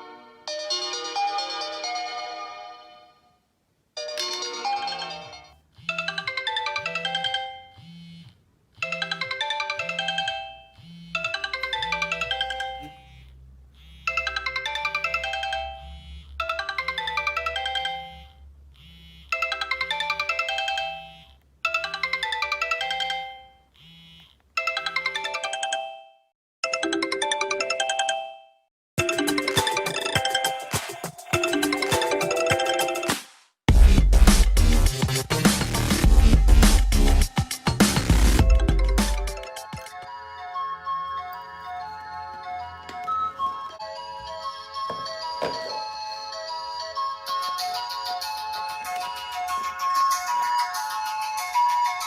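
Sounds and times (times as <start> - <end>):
electronic chime ringtone melody: 4.0 - 8.0, 8.8 - 18.4, 19.4 - 23.6, 24.6 - 33.1, 38.4 - 52.0
pulsing bass line: 33.7 - 39.4.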